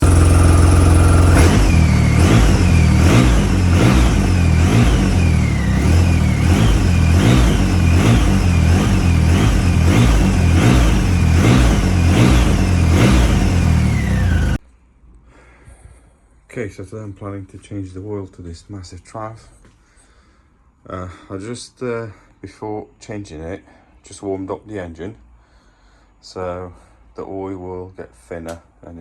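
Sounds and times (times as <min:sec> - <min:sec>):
motorcycle engine revving: 0:00.0 - 0:14.6.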